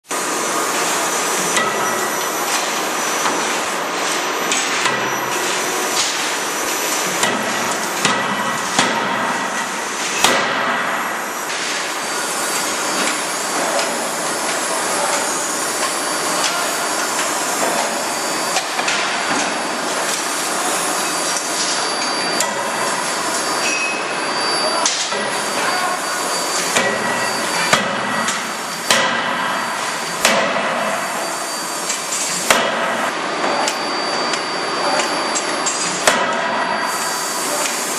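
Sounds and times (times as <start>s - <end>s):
workshop din: 0.1s - 37.9s.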